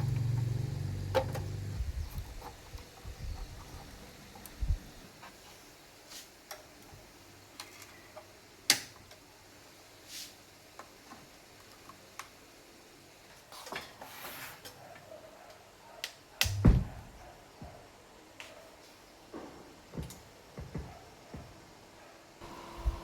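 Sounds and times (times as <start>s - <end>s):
heavy thump: 16.5s - 17.1s.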